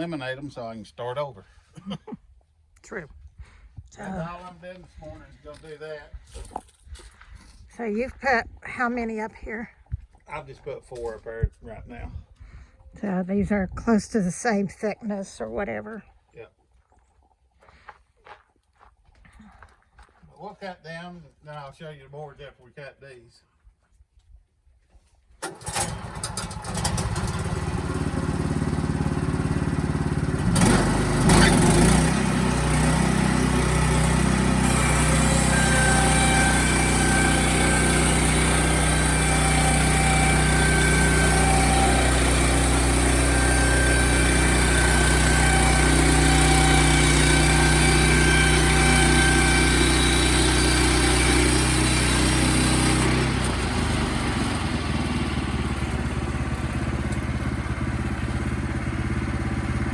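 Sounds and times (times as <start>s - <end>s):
sawmill engine running: 25.4s - 59.9s.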